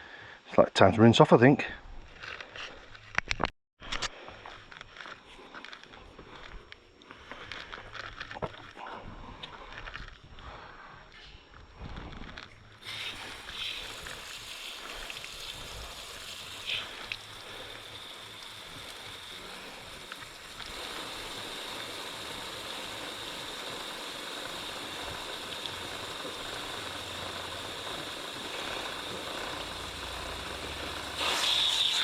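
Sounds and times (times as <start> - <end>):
water spraying onto motorcycle chain: 12.8 - 32.0.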